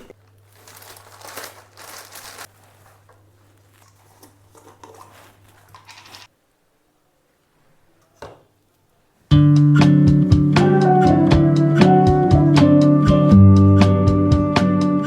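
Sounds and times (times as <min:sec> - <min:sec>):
packaging crinkling: 0:00.0 - 0:06.3.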